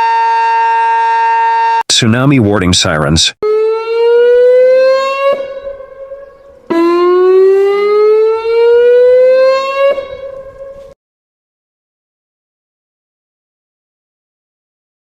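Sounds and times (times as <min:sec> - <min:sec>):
warning siren wailing: 0:00.0 - 0:01.9, 0:03.4 - 0:11.0.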